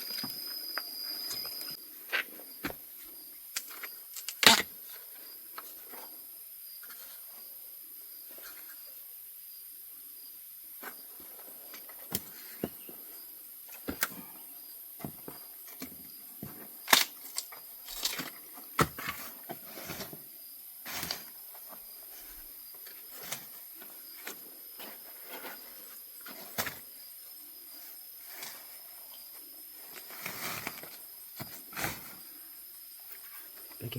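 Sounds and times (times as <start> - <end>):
high-pitched insect drone: 0.0 - 2.0
close crunches and snaps: 16.8 - 18.3.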